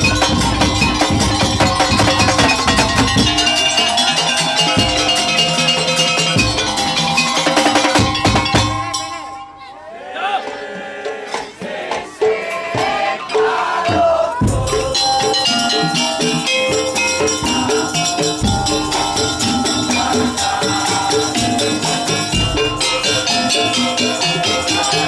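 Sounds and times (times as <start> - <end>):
percussion ensemble beat: 0.0 - 25.0
pitched metallic notes: 0.0 - 25.0
jingling shakers: 14.5 - 25.0.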